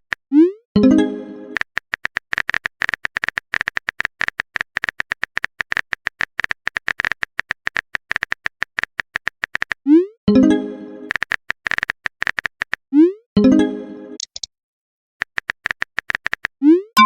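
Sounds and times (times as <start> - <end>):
rapid keyboard typing: 1.5 - 9.8, 11.0 - 12.8, 14.2 - 14.5, 15.2 - 16.5.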